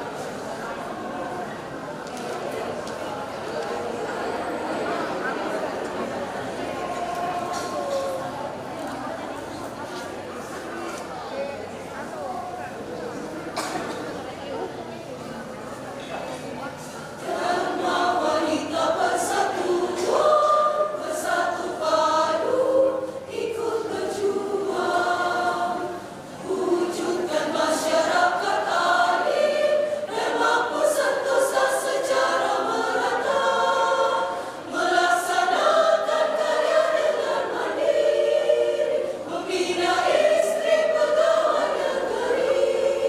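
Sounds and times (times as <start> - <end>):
women's choir singing: 17.1 - 43.0.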